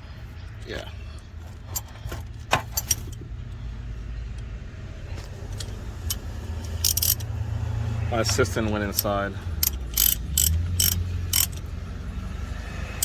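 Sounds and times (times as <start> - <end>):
metallic tool clicks and clinks: 5.5 - 7.3, 8.3 - 11.7.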